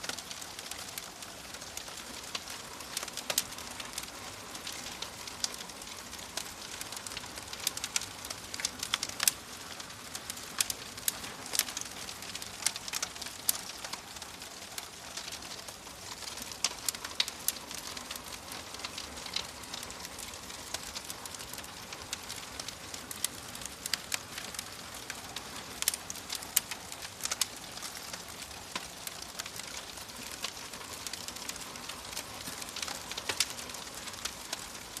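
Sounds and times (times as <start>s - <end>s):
wood fire crackling: 0.0s - 35.0s.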